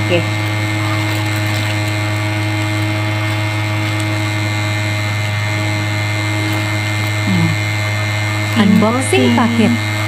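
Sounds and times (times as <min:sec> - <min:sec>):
steady low hum: 0:00.0 - 0:10.0
brief vocal sound: 0:07.3 - 0:07.6
faint steady higher tones: 0:07.3 - 0:10.0.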